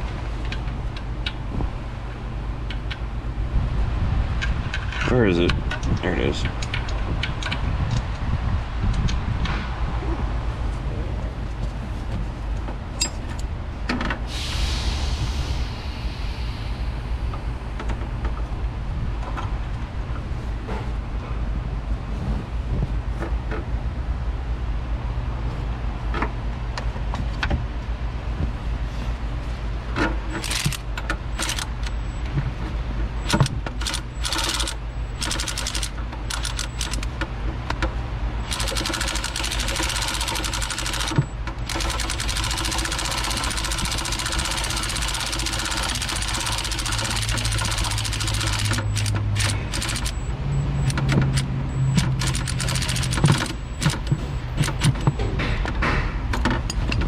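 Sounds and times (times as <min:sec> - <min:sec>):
steady low hum: 0:00.0 - 0:23.1, 0:27.2 - 0:57.0
ratchet clicking and knocking: 0:30.3 - 0:32.0, 0:33.2 - 0:37.1, 0:38.5 - 0:50.2, 0:50.8 - 0:55.1.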